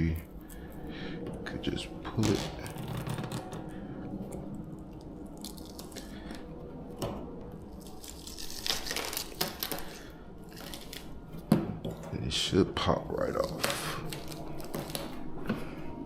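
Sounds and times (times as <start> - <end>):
adhesive tape crackling and scraping: 2.1 - 11.5, 13.2 - 15.4.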